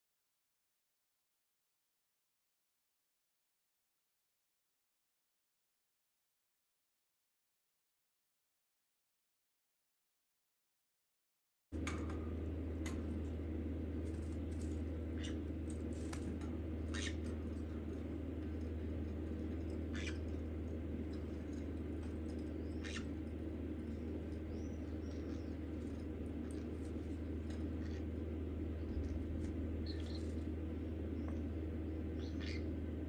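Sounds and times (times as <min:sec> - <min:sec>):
steady low hum: 0:11.8 - 0:33.0
small clicks and scratches: 0:14.0 - 0:28.1
parrot chick peeping: 0:14.1 - 0:30.5, 0:32.2 - 0:32.8.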